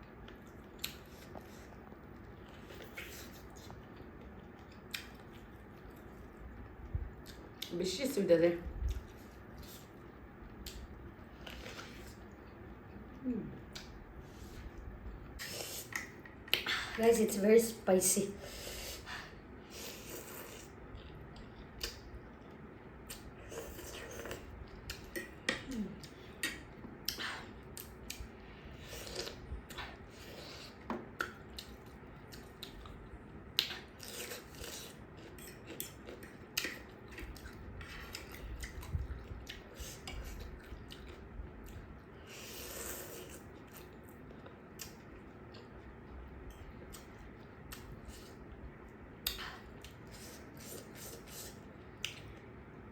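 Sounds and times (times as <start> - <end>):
person chewing: 0.1 - 7.7, 19.8 - 52.5.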